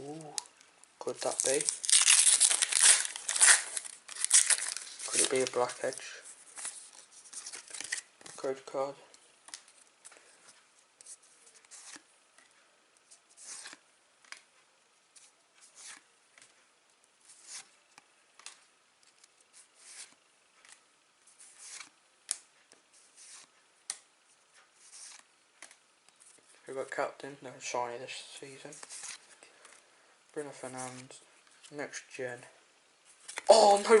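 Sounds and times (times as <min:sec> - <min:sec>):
cards sliding papery swish: 0:21.4 - 0:21.9, 0:24.8 - 0:25.3.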